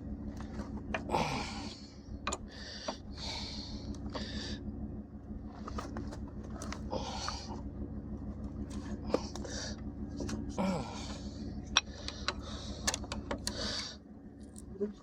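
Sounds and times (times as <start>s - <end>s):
pickup engine idling: 0.0s - 15.0s
person breathing: 1.1s - 4.6s, 6.9s - 7.6s, 9.2s - 9.8s, 10.6s - 12.9s, 13.5s - 14.0s.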